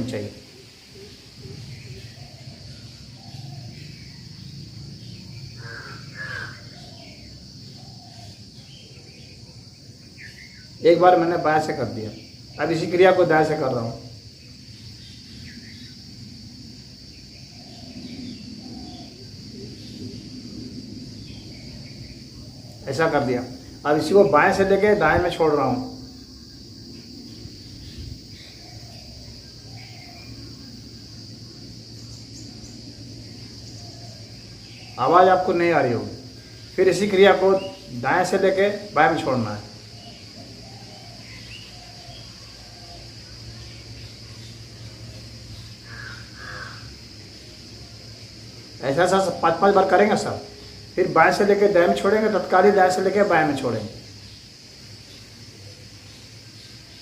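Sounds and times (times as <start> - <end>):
faint bird calls: 0.0 - 51.1
insects chirring: 0.0 - 57.0
bird short calls: 5.6 - 7.1.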